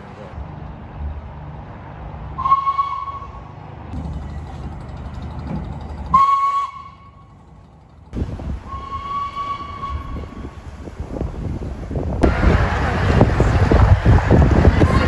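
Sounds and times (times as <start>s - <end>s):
low train rumble: 0.0s - 15.0s
steam locomotive whistle blasts: 2.4s - 3.4s, 6.1s - 7.2s, 8.6s - 10.5s.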